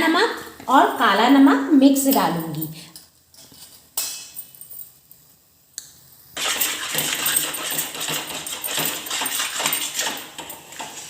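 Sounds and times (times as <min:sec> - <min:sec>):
spoon scraping and stirring in pan: 0:06.4 - 0:11.0.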